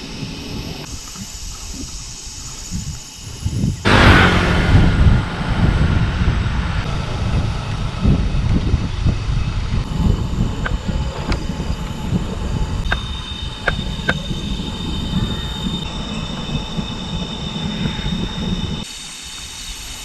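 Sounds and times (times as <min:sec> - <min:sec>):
cicadas buzzing loudly: 0:00.0 - 0:04.4, 0:06.8 - 0:20.0
low uneven rumble: 0:03.8 - 0:18.8.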